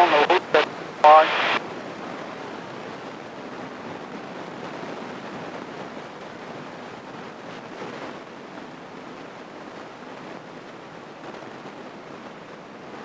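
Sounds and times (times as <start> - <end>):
airplane cabin noise: 0.0 - 1.6.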